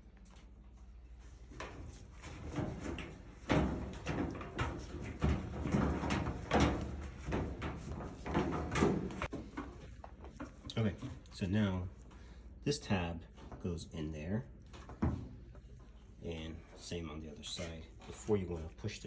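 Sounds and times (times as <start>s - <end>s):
sheet metal knocking and rattling: 1.6s - 9.6s.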